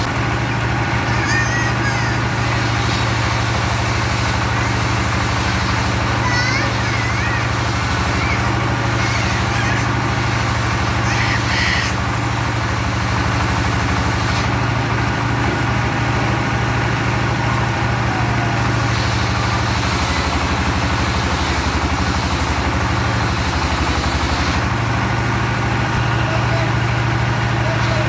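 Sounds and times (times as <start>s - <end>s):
sawmill engine humming: 0.0s - 28.0s.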